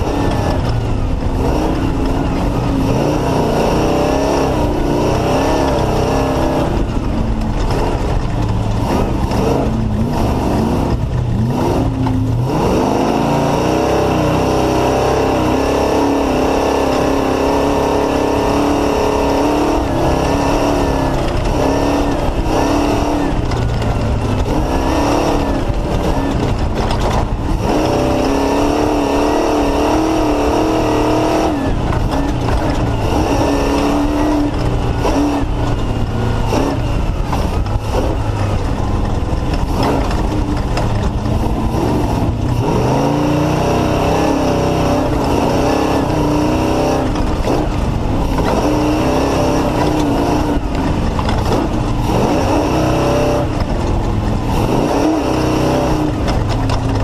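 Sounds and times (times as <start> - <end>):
race car engine revving: 0.0 - 57.0
chassis knocks and jolts: 19.6 - 57.0.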